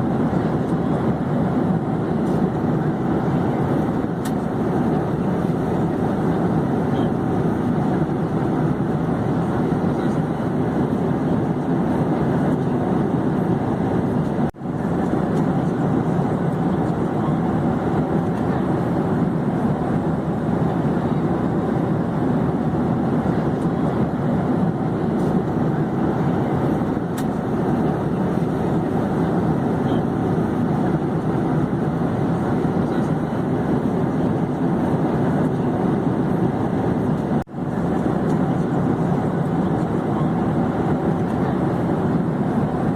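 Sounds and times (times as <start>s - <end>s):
airplane engine rumble: 0.0s - 42.9s.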